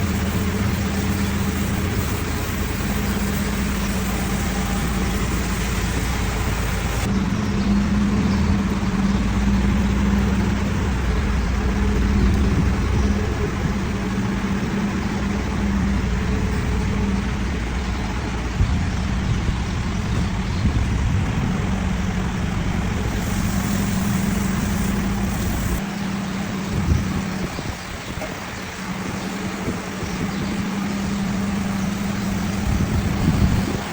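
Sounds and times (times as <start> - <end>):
high-pressure water spray: 0.0 - 7.1, 22.8 - 33.9
machine hum and rumble: 0.0 - 33.9.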